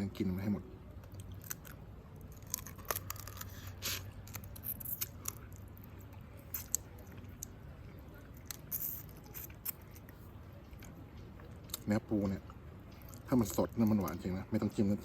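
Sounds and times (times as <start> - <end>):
crab shell cracking: 1.0 - 7.6, 8.3 - 10.2.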